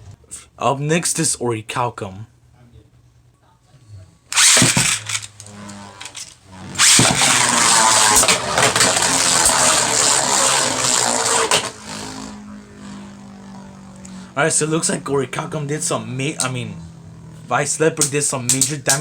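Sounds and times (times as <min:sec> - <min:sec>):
spinning tops grinding and clacking: 0:04.3 - 0:12.4, 0:18.0 - 0:19.0
spinning tops whirring: 0:04.3 - 0:19.0.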